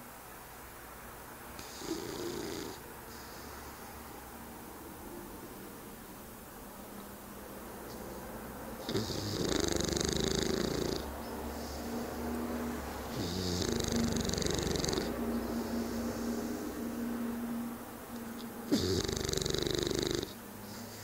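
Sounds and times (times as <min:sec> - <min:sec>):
dog snoring: 0:01.6 - 0:03.8, 0:08.8 - 0:12.2, 0:13.1 - 0:16.7, 0:18.6 - 0:21.0.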